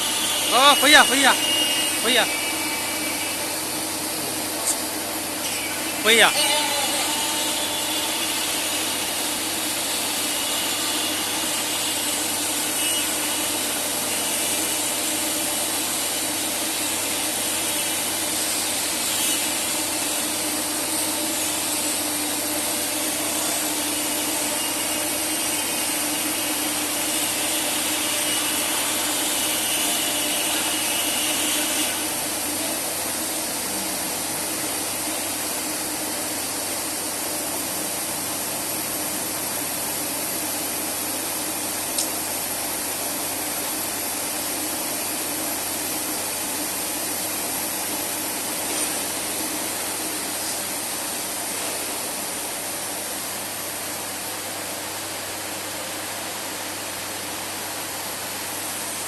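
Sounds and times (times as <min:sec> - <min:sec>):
router cutting wood: 0:00.0 - 0:35.4.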